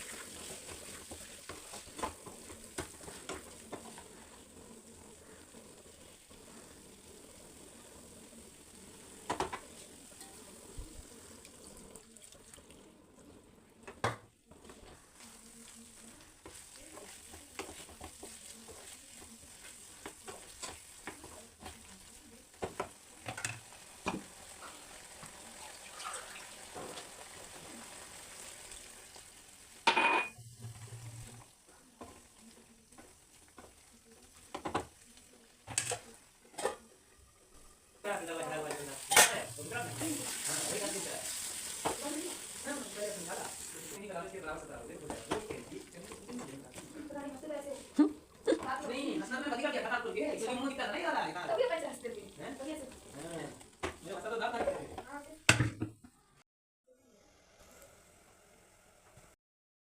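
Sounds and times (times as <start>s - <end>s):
spoon scraping a pan: 0.0s - 10.7s, 14.0s - 25.0s, 35.6s - 37.6s, 38.7s - 42.4s
food sizzling in a pan: 0.0s - 56.3s, 56.9s - 59.4s.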